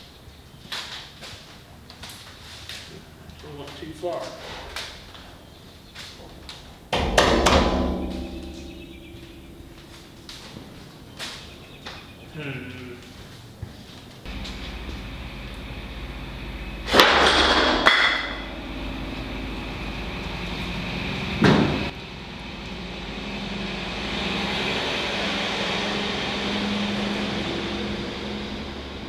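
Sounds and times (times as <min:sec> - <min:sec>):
low steady hum: 0:06.7 - 0:12.1, 0:14.3 - 0:29.0
heavy steel clanks: 0:06.9 - 0:11.8, 0:14.3 - 0:21.9.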